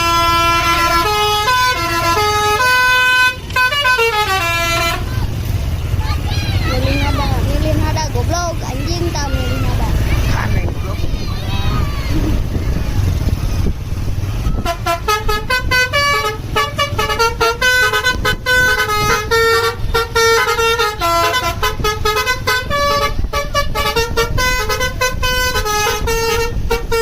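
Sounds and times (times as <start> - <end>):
multi-tone bus horn tune: 0.0 - 5.4, 14.5 - 27.0
low rumble: 4.4 - 22.1.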